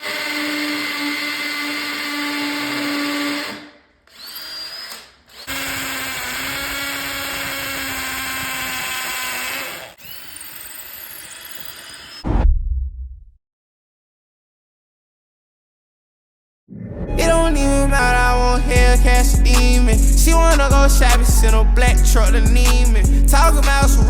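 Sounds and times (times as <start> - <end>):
power drill running: 0.0 - 12.2.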